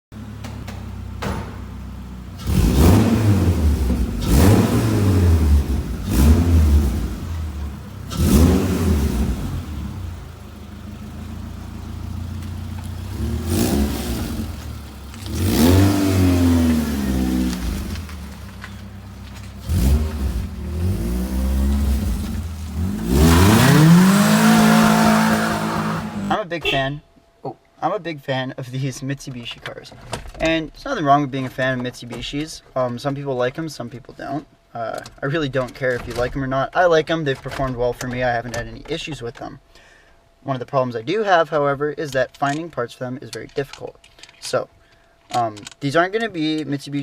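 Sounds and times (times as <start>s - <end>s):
car engine revving: 0.7s - 26.4s.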